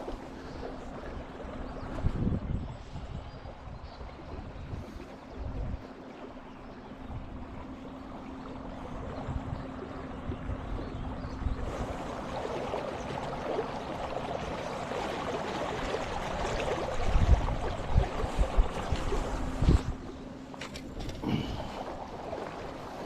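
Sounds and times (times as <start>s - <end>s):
steady low hum: 0.0s - 23.0s
water rushing and gurgling: 0.0s - 23.0s
wind on microphone: 1.6s - 5.9s, 8.9s - 12.4s, 16.0s - 20.2s.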